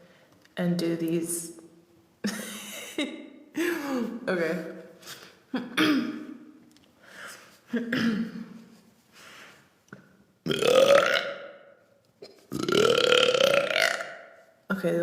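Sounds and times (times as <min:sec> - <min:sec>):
woman burping: 0:05.6 - 0:06.4, 0:07.8 - 0:08.6, 0:10.4 - 0:11.6, 0:12.2 - 0:14.3.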